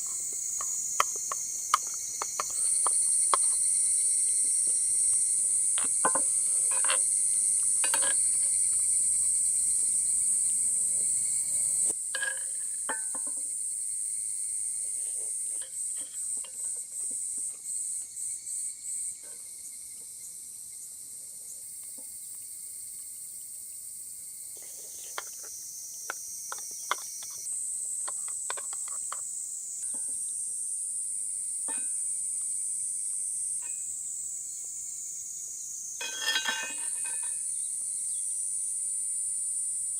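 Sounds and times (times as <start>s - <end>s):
insects buzzing: 0.0s - 39.9s.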